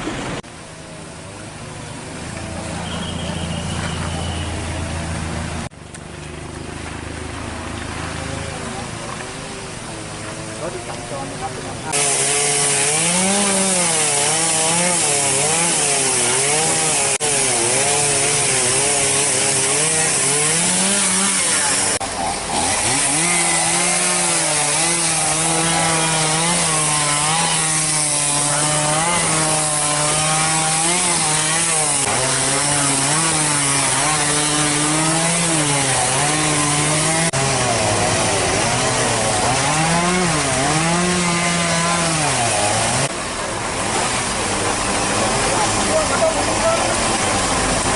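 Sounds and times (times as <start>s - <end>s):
chainsaw cutting wood: 11.9s - 43.2s.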